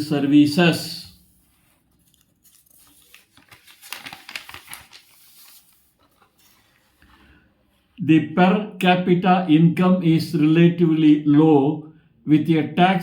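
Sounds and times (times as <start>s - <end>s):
faint crackling and crinkling: 1.1s - 7.9s.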